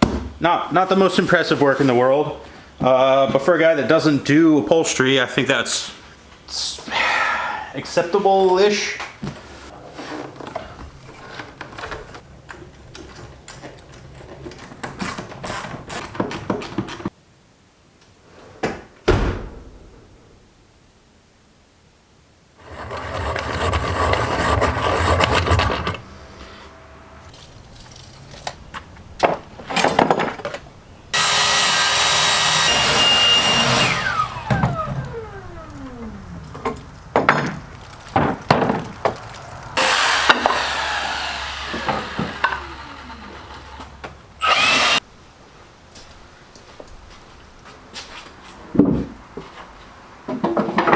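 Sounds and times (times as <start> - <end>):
sharp thump: 19.1 - 20.2
power tool running: 31.1 - 36.7, 39.8 - 45.0.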